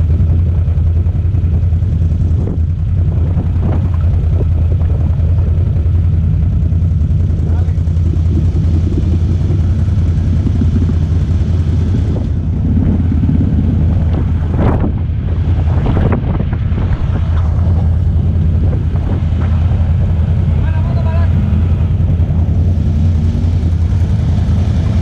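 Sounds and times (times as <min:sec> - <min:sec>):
utility vehicle engine running: 0:00.0 - 0:25.0
wind on microphone: 0:02.1 - 0:05.8, 0:07.9 - 0:20.6.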